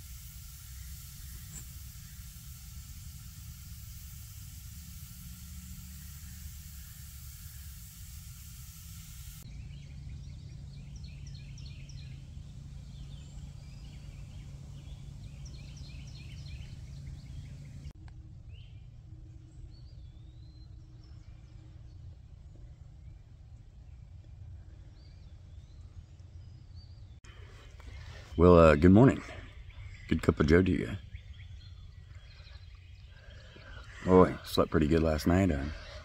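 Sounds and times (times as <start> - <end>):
steady hiss: 0.0 - 9.5, 10.9 - 18.0, 27.3 - 36.0
songbirds chirping: 0.0 - 36.0.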